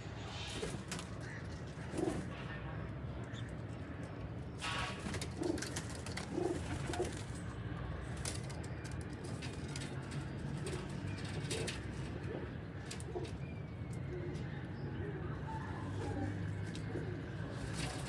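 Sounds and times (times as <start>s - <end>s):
pigeons cooing: 0.3s - 2.4s, 4.8s - 7.4s, 9.3s - 18.0s.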